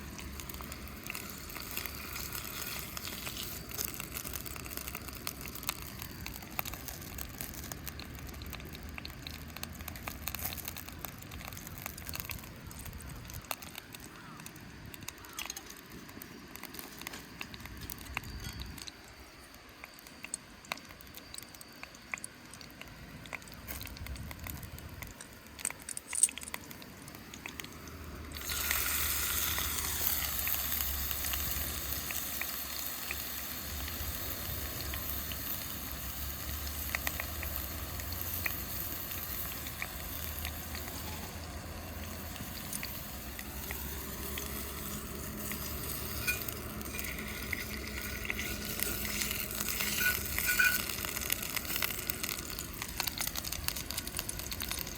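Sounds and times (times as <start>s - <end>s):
food sizzling in hot oil: 0.0s - 54.9s.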